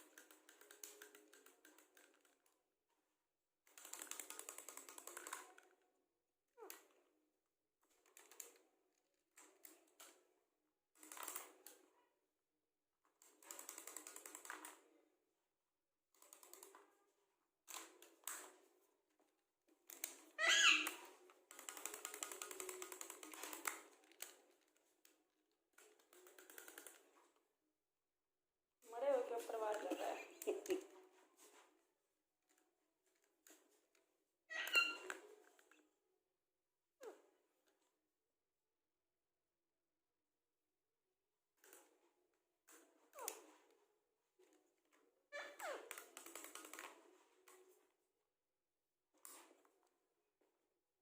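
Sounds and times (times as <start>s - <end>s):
clicking chatter and chirping: 19.9s - 24.6s, 34.5s - 35.7s.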